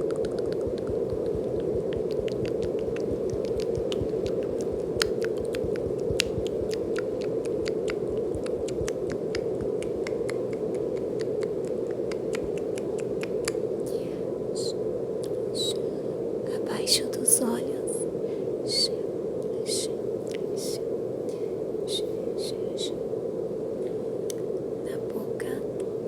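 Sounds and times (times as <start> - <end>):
light irregular clicks: 0.0 - 14.0
brown noise hiss: 0.0 - 26.0.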